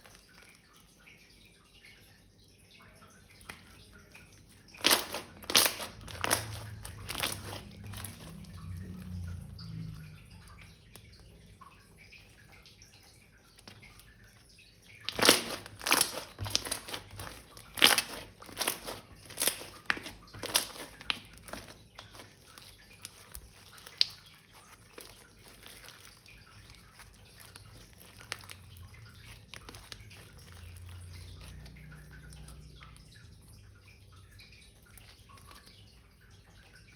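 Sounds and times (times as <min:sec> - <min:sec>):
slime crackling and popping: 0:04.8 - 0:09.7, 0:15.1 - 0:32.5.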